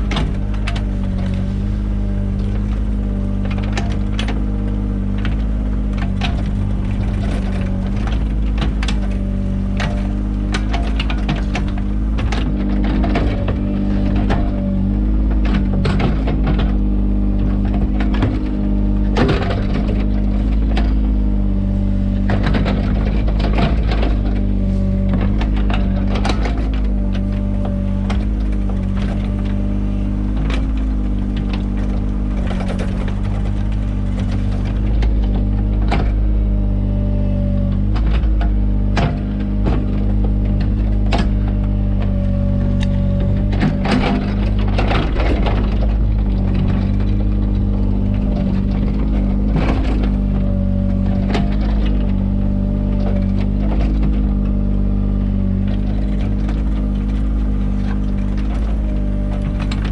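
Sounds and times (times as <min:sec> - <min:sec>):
bucket knocking and clattering in soil: 0:00.0 - 0:36.4
excavator engine running: 0:00.0 - 0:59.9.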